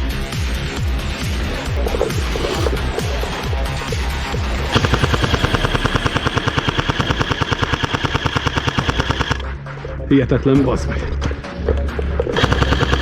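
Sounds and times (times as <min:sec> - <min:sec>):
gearbox whine: 0:01.1 - 0:03.6, 0:04.4 - 0:09.4, 0:12.4 - 0:13.0
airsoft gun full-auto burst: 0:04.7 - 0:09.4, 0:12.4 - 0:13.0.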